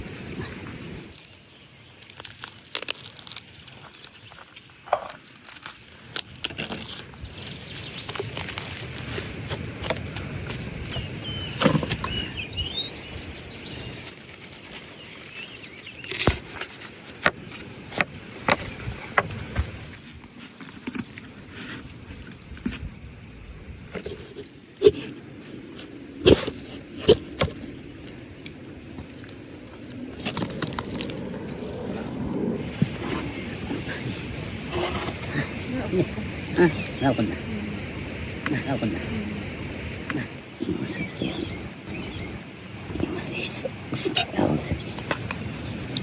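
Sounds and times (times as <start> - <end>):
bird chirping: 10.8 - 16.8, 23.4 - 46.0.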